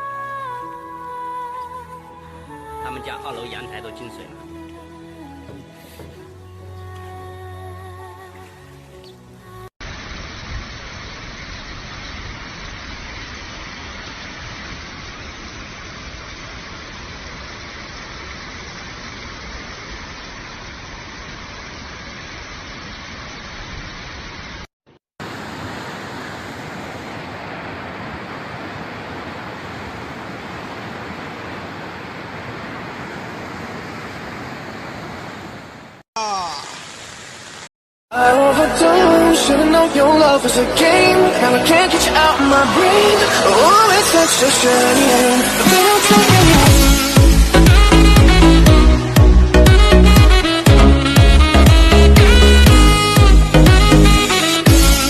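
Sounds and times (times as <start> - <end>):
rushing flood water: 25.2 - 37.7, 38.5 - 48.4.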